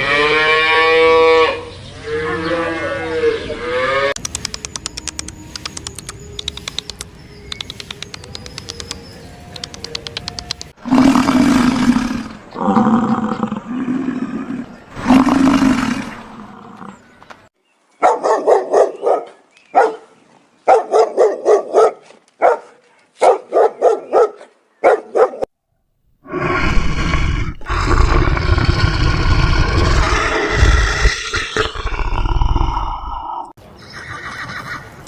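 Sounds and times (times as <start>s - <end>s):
long rough roar: 10.8s - 17.0s, 26.2s - 33.3s
short quick barks: 20.7s - 25.4s
pitched animal calls: 26.3s - 34.8s.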